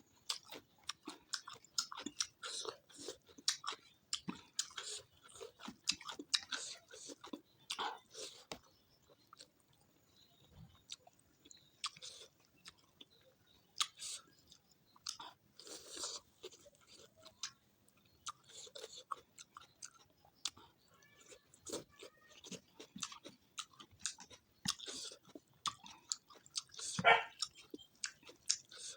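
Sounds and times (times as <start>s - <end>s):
person chewing and crunching food: 0.0s - 28.9s.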